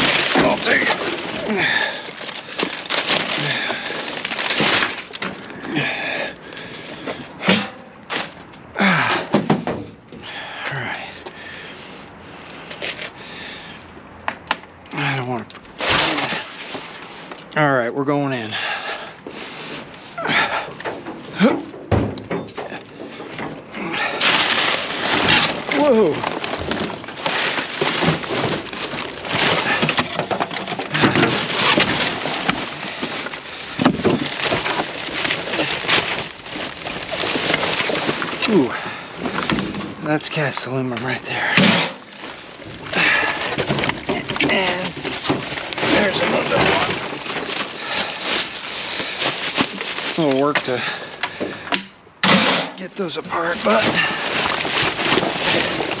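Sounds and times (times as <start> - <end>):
scrap metal knocks and clatter: 0.0 - 5.7, 6.3 - 10.2, 19.3 - 56.0
junk rustling: 0.0 - 14.9, 15.5 - 17.7, 18.3 - 56.0
cricket chirping: 0.0 - 17.9, 21.1 - 26.5, 50.8 - 52.3.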